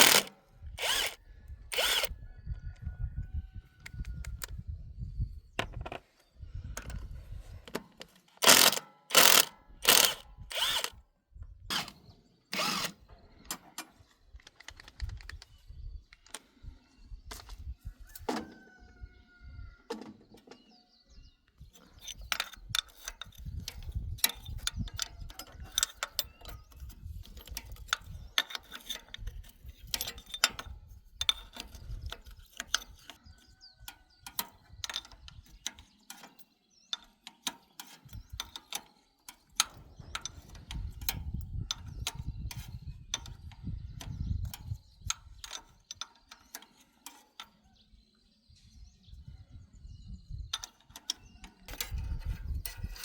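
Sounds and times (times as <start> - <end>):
metallic clicks and clanks: 0.0 - 2.1, 8.4 - 11.0.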